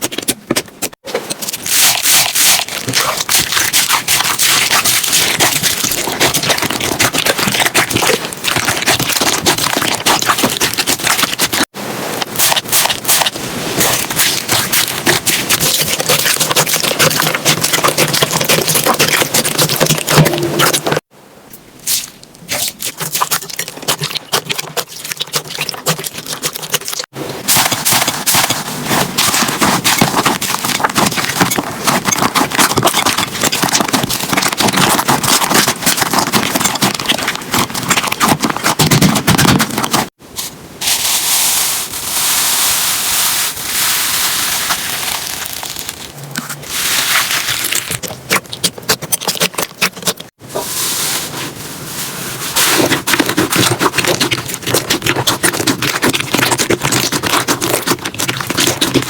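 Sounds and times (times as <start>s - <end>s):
slime squeezed by hand: 1.5s - 11.7s, 21.8s - 51.4s.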